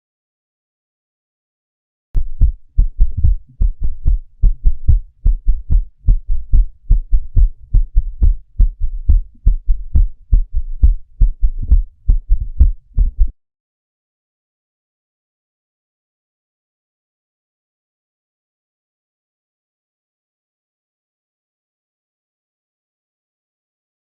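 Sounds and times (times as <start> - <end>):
heartbeat with extra low thud: 2.2 - 13.4.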